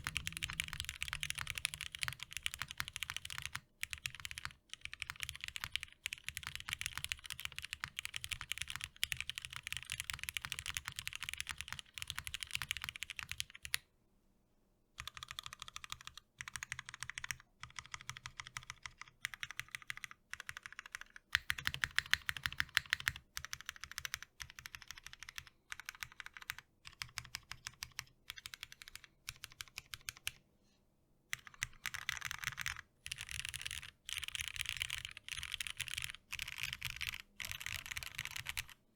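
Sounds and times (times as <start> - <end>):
fast typing on mechanical keyboard: 0.0 - 13.8, 15.0 - 30.4, 31.3 - 38.8.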